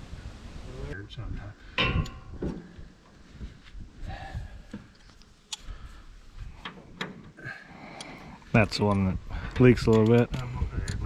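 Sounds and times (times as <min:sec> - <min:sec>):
light clicks and taps: 0:08.8 - 0:11.0.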